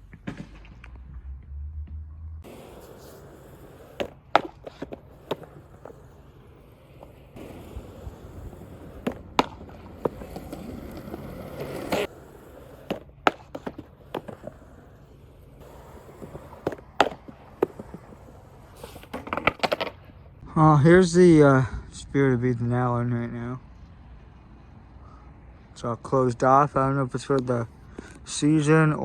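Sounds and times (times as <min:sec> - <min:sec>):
skateboard wheels rolling on concrete: 0:00.0 - 0:21.6
skateboard deck clacks: 0:02.4 - 0:20.2.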